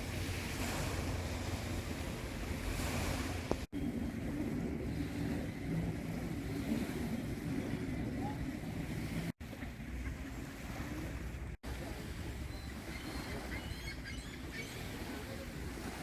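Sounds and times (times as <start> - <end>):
water noise: 0.0 - 16.0
wind: 0.0 - 16.0
faint high bird calls: 12.5 - 15.0.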